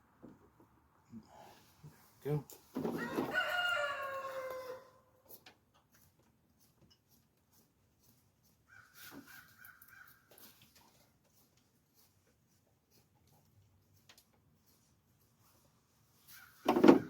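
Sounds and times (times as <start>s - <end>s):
rooster crowing: 2.9s - 5.0s
faint clicks and scrapes: 5.2s - 16.8s.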